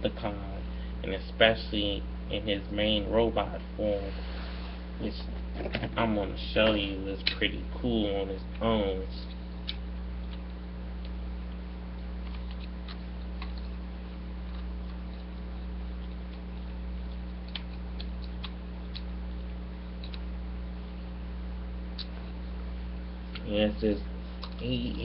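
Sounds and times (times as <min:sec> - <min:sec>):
electrical hum: 0:00.0 - 0:25.0.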